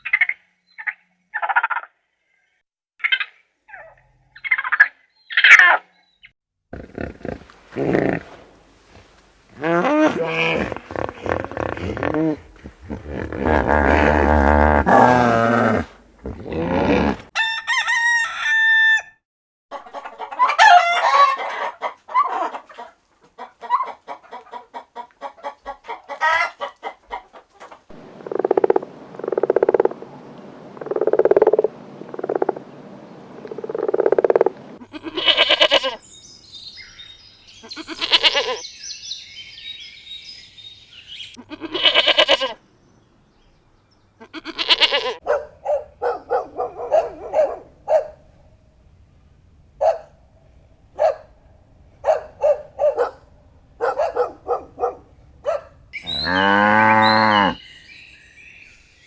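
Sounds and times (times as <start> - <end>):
cow mooing low: 9.6 - 17.3, 56.0 - 57.6
farm animal calls: 34.8 - 36.1, 36.8 - 42.6, 44.2 - 45.3, 53.8 - 58.7.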